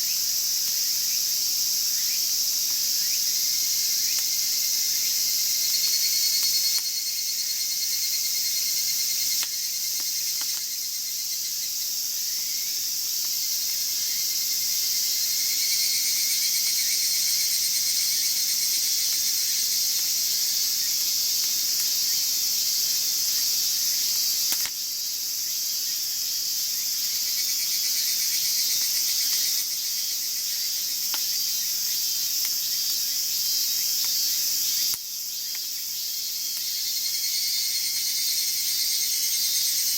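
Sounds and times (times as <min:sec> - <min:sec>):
crickets and insects trilling: 0:00.0 - 0:39.9
wood fire popping: 0:09.4 - 0:10.7, 0:24.5 - 0:24.8.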